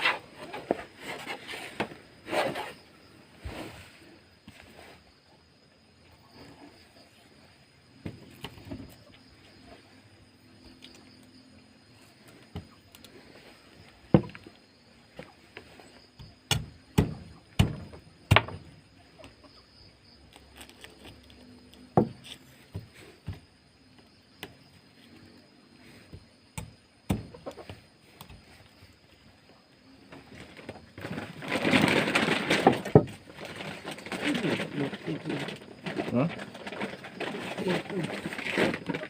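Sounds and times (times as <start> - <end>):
sharp knocks and thuds: 14.0 - 14.6, 16.1 - 18.8, 21.9 - 23.5, 26.1 - 28.6.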